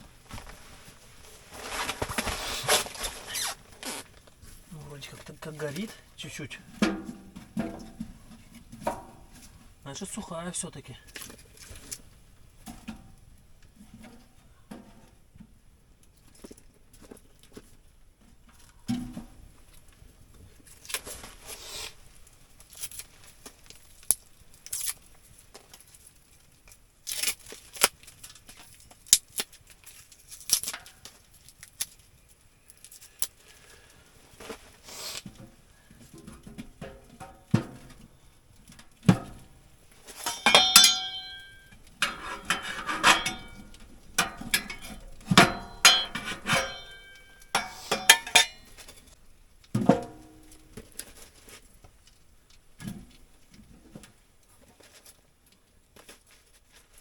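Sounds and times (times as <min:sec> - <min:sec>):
rustling: 0:00.0 - 0:10.4, 0:19.6 - 0:57.0
metal cookware clinking: 0:40.0 - 0:48.9.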